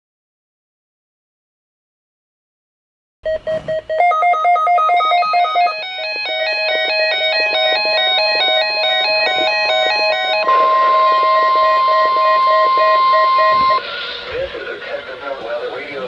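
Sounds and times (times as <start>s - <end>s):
loud steady alarm tone: 3.3s - 15.7s
electronic music: 4.3s - 15.4s.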